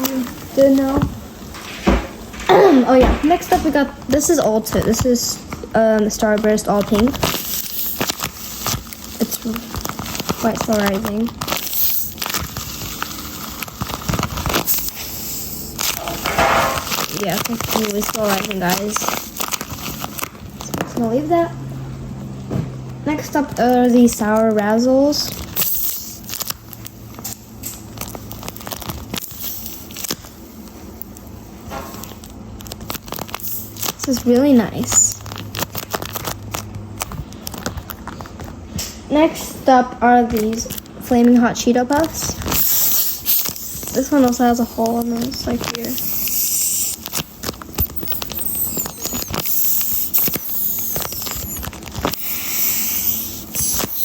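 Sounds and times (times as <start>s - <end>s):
paper crinkling and crackling: 0.0s - 21.2s, 23.6s - 38.8s, 40.3s - 54.0s
short high squeaks: 42.6s - 43.9s, 45.9s - 47.0s, 47.7s - 54.0s.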